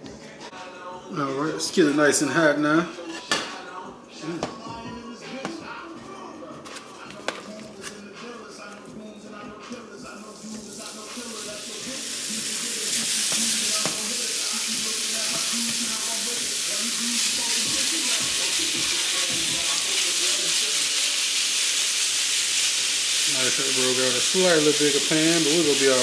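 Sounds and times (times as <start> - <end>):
chicken sizzling in a pan: 10.0 - 26.0.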